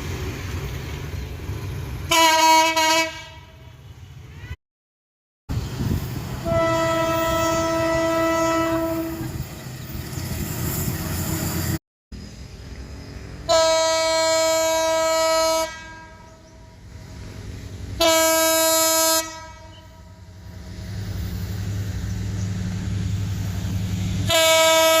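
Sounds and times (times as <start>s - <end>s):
low train rumble: 0.0s - 4.6s, 5.5s - 25.0s
locomotive air horn blasts: 2.1s - 3.7s, 6.4s - 9.4s, 13.5s - 16.6s, 18.0s - 20.3s, 24.2s - 25.0s.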